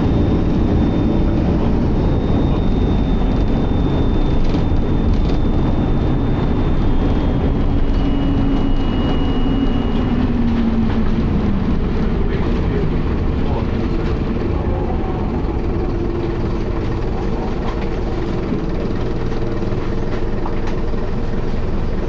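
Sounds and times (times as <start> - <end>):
bus engine and road noise: 0.0 - 22.0
gearbox whine gliding down: 0.0 - 22.0
thin high-pitched whine: 0.1 - 12.8.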